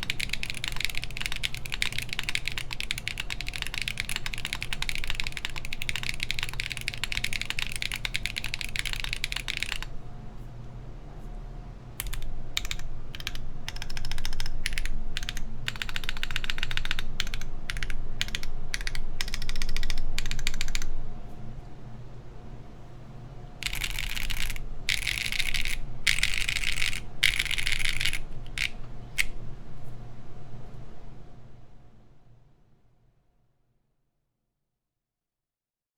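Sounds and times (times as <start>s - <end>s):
mechanical keyboard typing: 0.0s - 10.0s, 12.0s - 21.0s, 23.6s - 29.4s
low fan hum: 0.0s - 33.2s.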